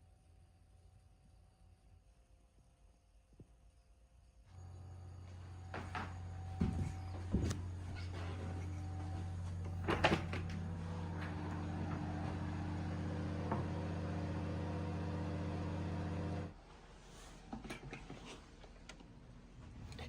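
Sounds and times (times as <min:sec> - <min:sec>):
steady electric hum: 0:04.1 - 0:20.0.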